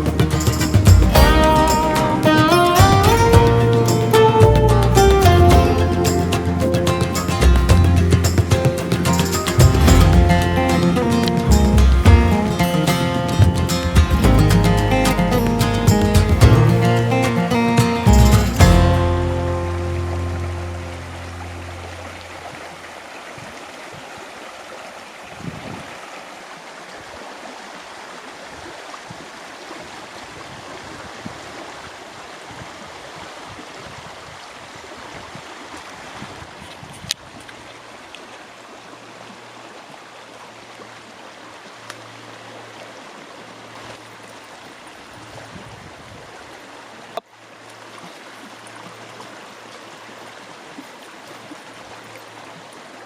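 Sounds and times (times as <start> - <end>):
running water rushing: 0.0 - 53.0.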